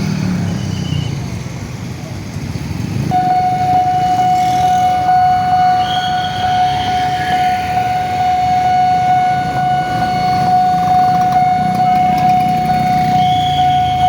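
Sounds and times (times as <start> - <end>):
low rumble of traffic: 0.0 - 14.0
level crossing electronic alarm tone: 3.1 - 14.0.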